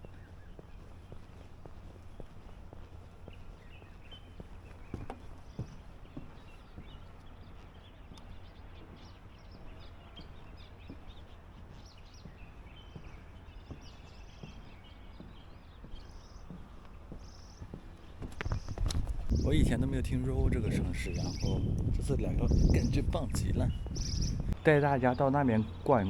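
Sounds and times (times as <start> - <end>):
small birds chirping: 0.0 - 26.0
soft knocks: 4.9 - 7.0.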